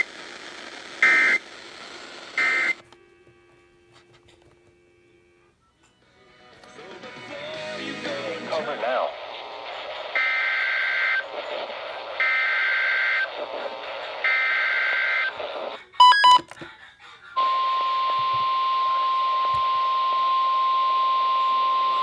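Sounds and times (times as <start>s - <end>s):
radio hiss: 0.0s - 2.9s, 7.9s - 16.6s
short sharp beeps: 16.0s - 16.5s.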